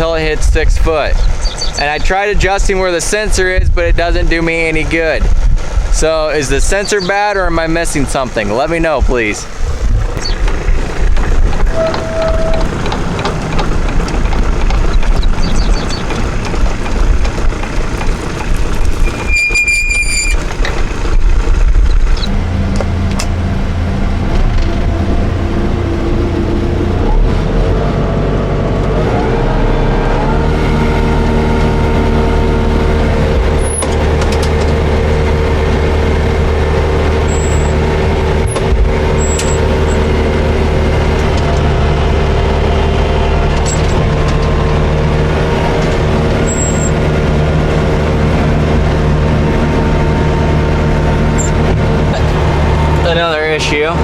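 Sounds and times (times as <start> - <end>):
tractor engine running: 0.0 - 54.0
high-pitched beep: 11.7 - 12.7.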